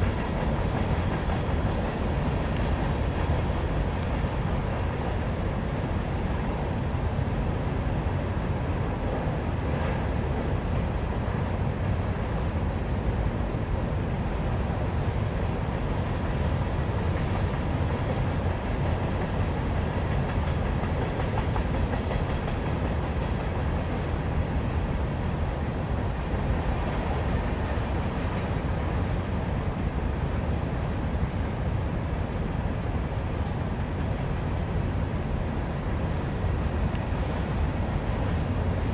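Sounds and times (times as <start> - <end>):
train cars rumbling past: 0.0 - 38.9
high wheel squeal: 11.6 - 14.6, 38.3 - 38.9.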